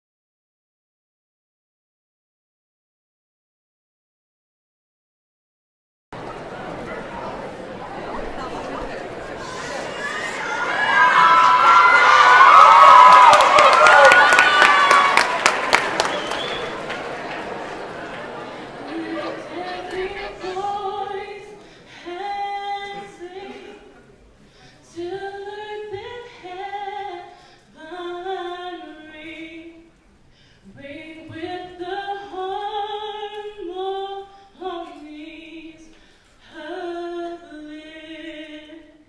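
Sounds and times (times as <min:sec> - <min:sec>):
woman singing unaccompanied: 0:18.9 - 0:24.0, 0:24.9 - 0:29.9, 0:30.7 - 0:39.0
singer breathing: 0:21.6 - 0:22.1, 0:24.4 - 0:24.9, 0:30.2 - 0:30.7, 0:35.9 - 0:36.4.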